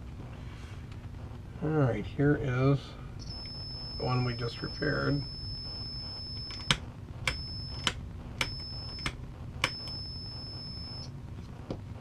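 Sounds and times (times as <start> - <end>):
steady high-pitched tone: 2.8 - 11.2.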